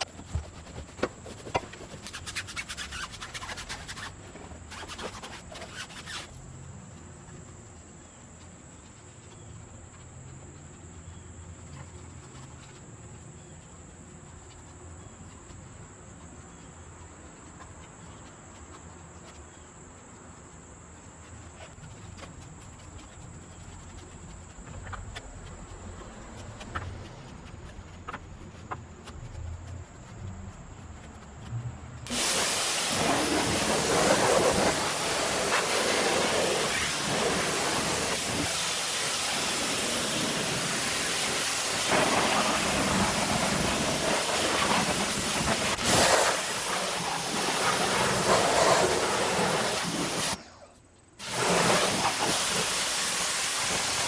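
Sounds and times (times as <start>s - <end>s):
short hissing bursts: 0.0s - 6.4s, 32.1s - 54.0s
brush scrubbing a tire: 0.0s - 8.2s, 11.2s - 50.6s, 51.2s - 54.0s.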